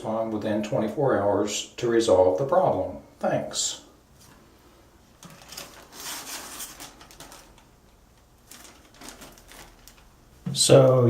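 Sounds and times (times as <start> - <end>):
packaging crinkling and rustling: 5.2 - 11.0.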